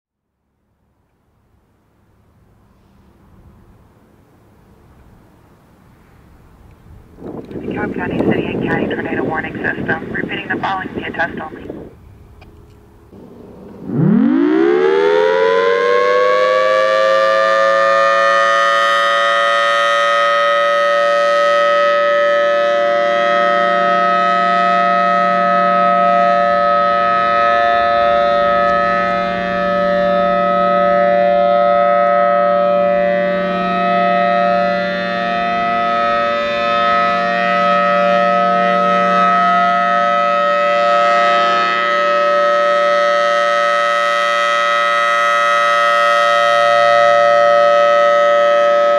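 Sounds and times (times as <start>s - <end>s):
warning siren two-note chord: 13.1s - 48.9s.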